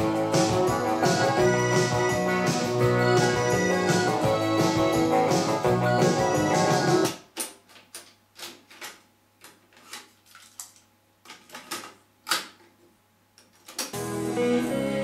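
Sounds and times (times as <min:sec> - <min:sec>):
music: 0:00.0 - 0:07.1, 0:13.9 - 0:15.0.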